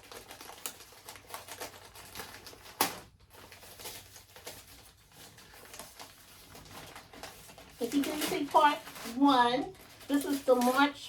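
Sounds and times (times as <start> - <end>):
packaging crackling and rustling: 0.0 - 11.0
packaging snap: 0.4 - 3.2.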